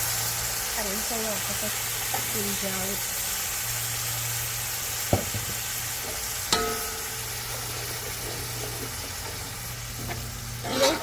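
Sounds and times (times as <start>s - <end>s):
spices sizzling in hot oil: 0.0s - 11.0s
spoon knocking against pot: 6.5s - 7.1s.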